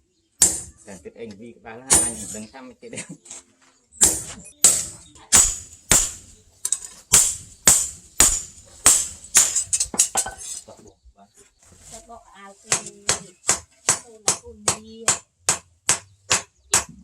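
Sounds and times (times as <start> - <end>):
hammer striking steel on anvil: 0.4 - 0.8, 1.9 - 2.4, 4.0 - 10.6, 13.5 - 17.0.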